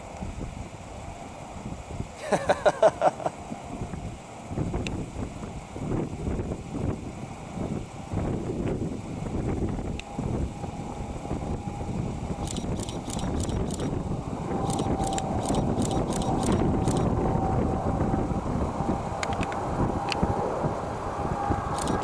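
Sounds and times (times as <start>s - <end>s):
wind on microphone: 0.0s - 2.6s, 3.2s - 22.0s
faint constant whine: 0.0s - 22.0s
low engine noise: 0.0s - 22.0s
camera shutter clicks: 12.5s - 13.9s, 14.7s - 17.1s, 21.7s - 22.0s.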